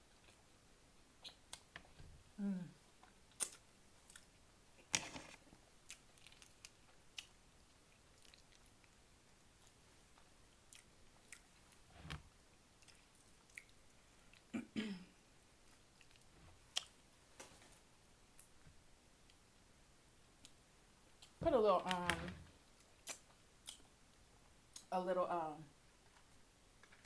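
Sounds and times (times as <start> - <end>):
person chewing: 5.9 - 7.3, 7.9 - 9.0, 10.7 - 11.8, 12.8 - 14.5, 22.8 - 23.9.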